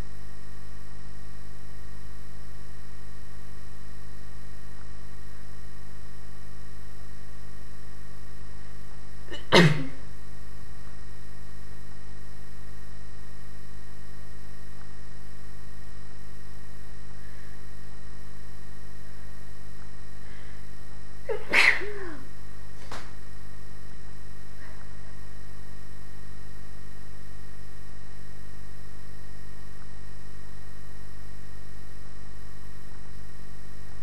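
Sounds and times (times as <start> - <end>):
steady electrical hum: 0.0 - 34.0
person sneezing: 9.3 - 10.0, 21.3 - 22.3.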